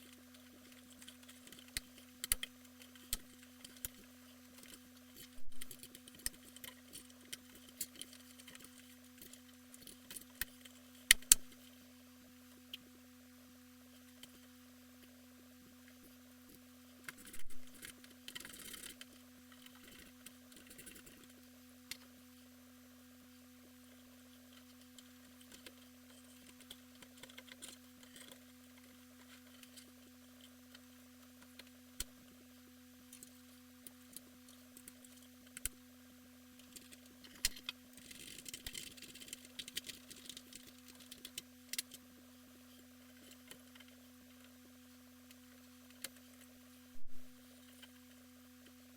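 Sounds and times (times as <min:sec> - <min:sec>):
steady hum: 0:00.0 - 0:48.9
computer parts clicking and clattering: 0:17.1 - 0:21.3.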